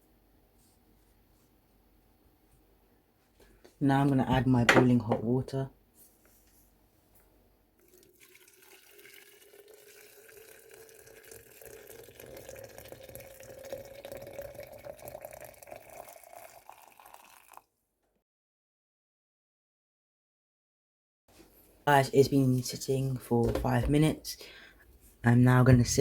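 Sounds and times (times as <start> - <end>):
boiling water pouring into container: 7.8 - 17.7.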